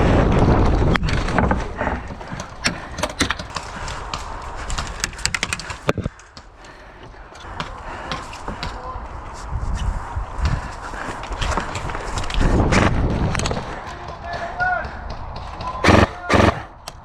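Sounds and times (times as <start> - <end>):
gear rustling: 1.0 - 7.4
footsteps: 15.4 - 16.8
airsoft gunfire cracks: 15.8 - 16.7.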